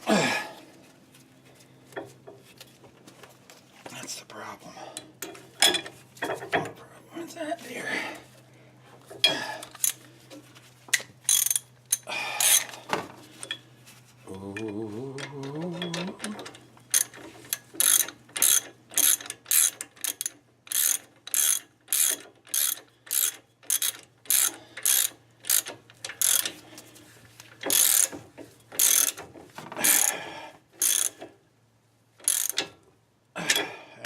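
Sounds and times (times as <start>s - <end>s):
ratchet wrench clicking: 10.9s - 12.6s, 15.2s - 26.6s, 27.6s - 28.1s, 28.8s - 29.2s, 29.8s - 30.1s, 30.8s - 31.2s, 32.2s - 32.7s.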